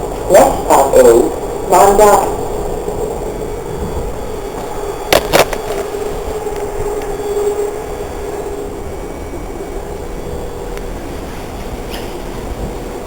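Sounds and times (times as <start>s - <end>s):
mid-pitched whine: 0.0s - 13.0s
subway car rumble: 0.0s - 13.0s
sharp knocks: 5.1s - 5.8s.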